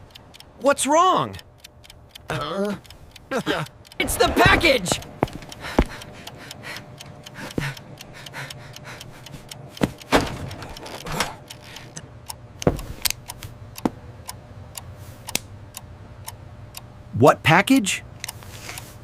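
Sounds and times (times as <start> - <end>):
clock ticking: 0.0 - 16.9.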